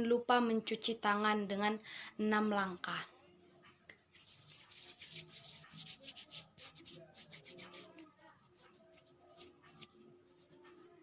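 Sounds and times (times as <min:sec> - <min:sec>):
hands rubbing together: 0:04.1 - 0:11.0.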